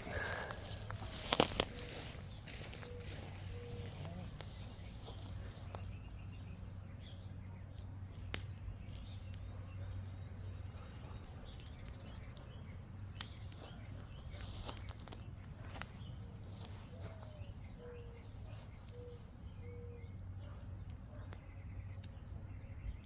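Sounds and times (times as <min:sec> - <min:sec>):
campfire crackling: 0:00.0 - 0:23.0
fire pops: 0:07.7 - 0:10.5, 0:11.2 - 0:13.8.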